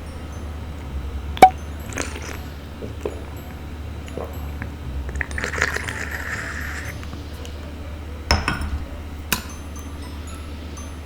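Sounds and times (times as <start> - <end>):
tableware tapping and scraping: 8.3 - 9.6.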